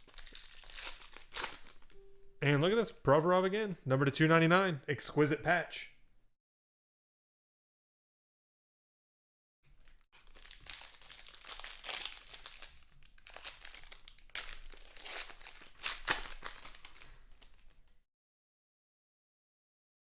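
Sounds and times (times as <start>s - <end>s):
foil wrapper crinkling and tearing: 0.0s - 2.0s, 9.7s - 17.9s.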